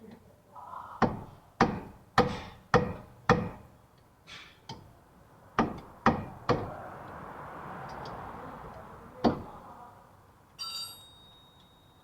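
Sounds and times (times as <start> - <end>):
hammer striking metal: 1.0 - 3.7, 5.6 - 6.7.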